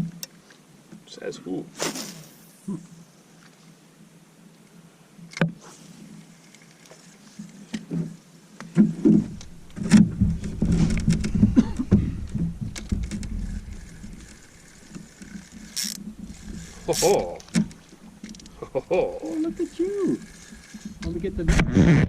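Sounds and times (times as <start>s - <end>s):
gear knocking on canoe hull: 8.8s - 14.2s
low rumble: 9.2s - 14.4s.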